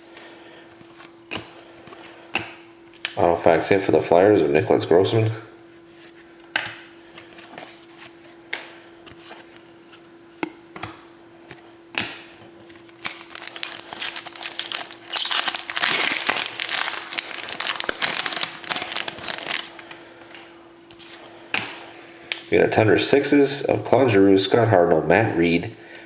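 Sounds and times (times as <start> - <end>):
foil wrapper crinkling: 12.7 - 20.0.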